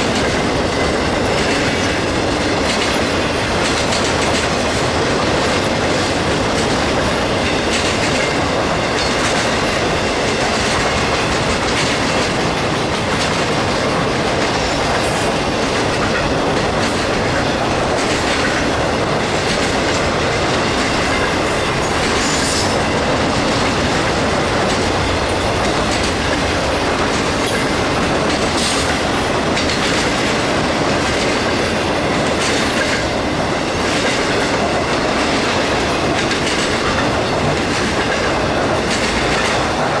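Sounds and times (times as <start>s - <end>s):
train wheels clattering over rails: 0.0s - 40.0s.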